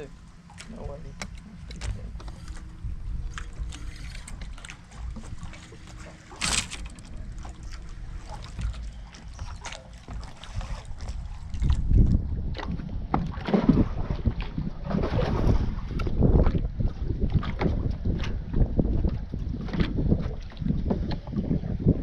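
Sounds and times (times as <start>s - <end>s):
low rumble: 0.0s - 22.0s
water splash: 3.3s - 11.9s.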